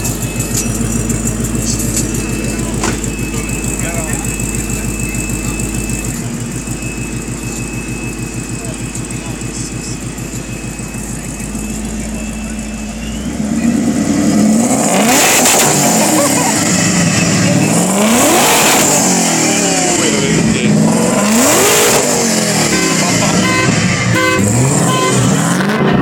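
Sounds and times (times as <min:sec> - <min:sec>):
car engine idling and revving: 0:00.0 - 0:26.0.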